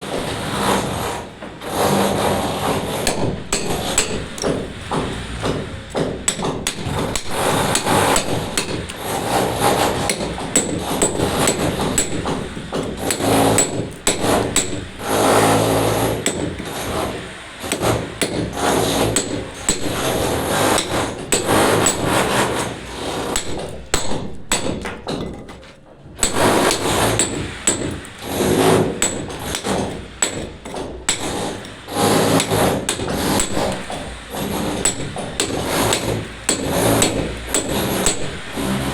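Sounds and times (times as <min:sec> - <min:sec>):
hand hammer striking: 0:03.0 - 0:09.1, 0:09.8 - 0:14.9, 0:29.0 - 0:31.5, 0:32.3 - 0:38.4.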